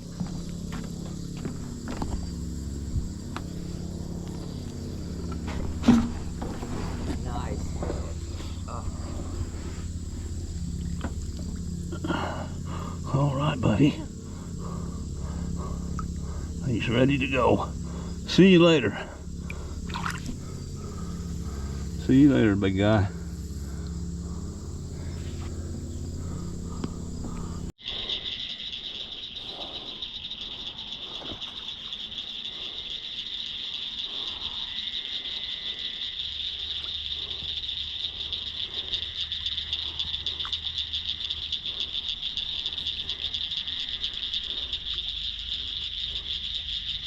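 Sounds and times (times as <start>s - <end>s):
low hum: 0.0s - 27.8s
insects trilling: 0.0s - 47.0s.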